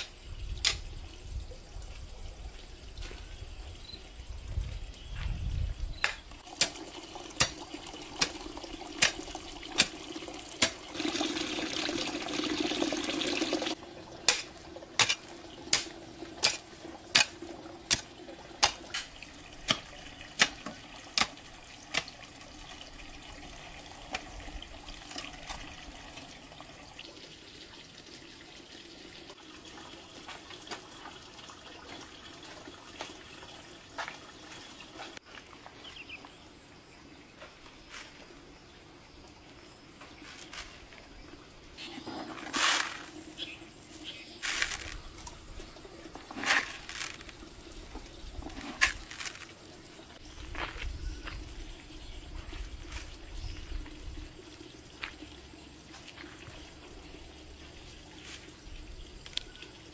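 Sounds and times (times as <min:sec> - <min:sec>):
water running from a tap: 0:06.4 - 0:34.5.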